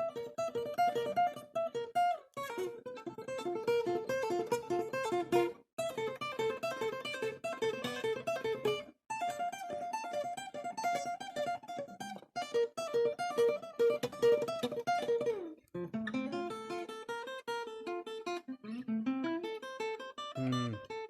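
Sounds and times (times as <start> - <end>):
acoustic guitar picking: 20.3 - 20.9.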